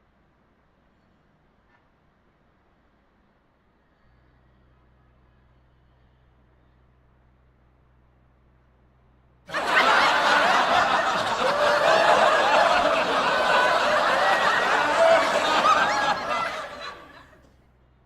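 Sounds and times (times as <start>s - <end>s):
people laughing: 9.5s - 17.4s.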